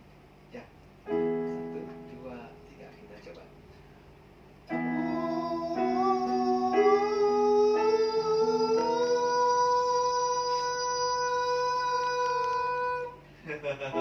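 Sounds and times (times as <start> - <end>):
accompanying chords: 1.0 - 3.9, 4.6 - 13.2
person singing sustained notes: 4.7 - 13.2.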